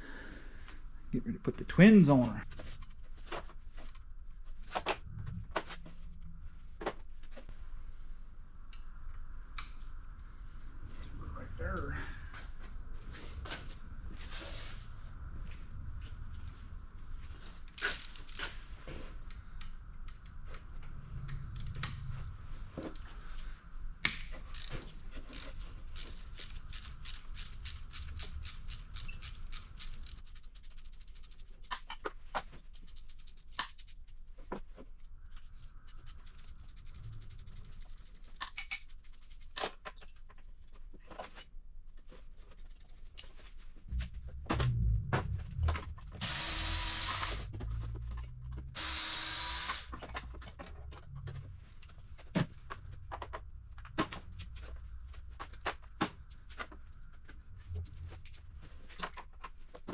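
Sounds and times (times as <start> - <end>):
metallic clicks and scrapes: 17.4 - 18.6, 21.1 - 22.2, 24.0 - 34.6, 35.2 - 40.4, 41.1 - 44.7.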